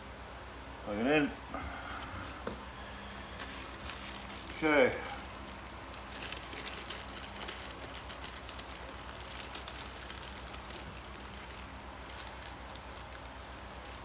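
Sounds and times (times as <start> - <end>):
faint low hum: 0.0 - 14.0.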